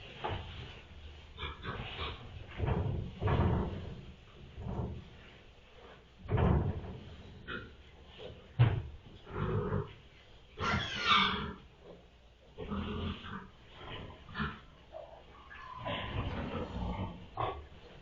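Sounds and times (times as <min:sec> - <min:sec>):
pig grunting: 0:09.2 - 0:10.0, 0:12.6 - 0:17.9.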